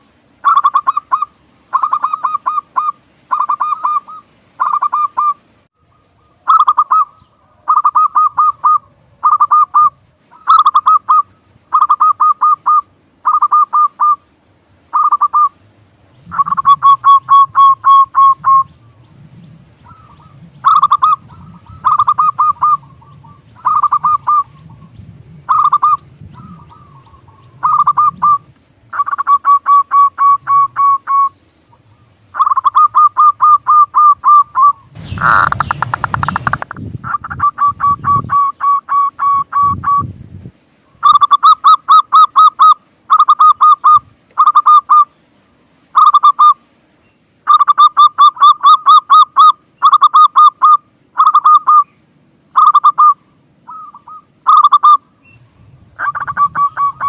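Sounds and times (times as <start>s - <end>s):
dove cooing: 0.4s - 14.3s, 14.9s - 15.6s, 16.2s - 40.1s, 41.0s - 45.1s, 46.0s - 46.6s, 47.5s - 51.9s, 52.6s - 57.0s
loud rushing noise: 34.9s - 36.8s.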